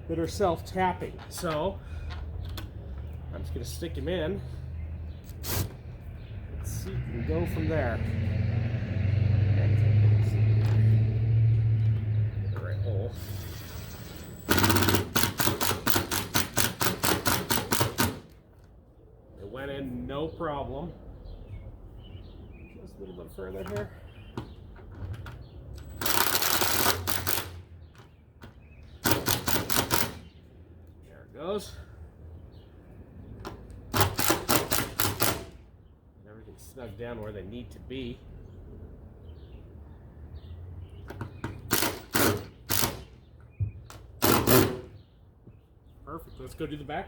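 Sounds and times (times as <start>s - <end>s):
power screwdriver driving screw: 5.3s - 5.8s, 13.2s - 18.2s, 41.7s - 43.1s, 44.2s - 44.9s
mechanical rattles and scrapes: 13.1s - 16.8s.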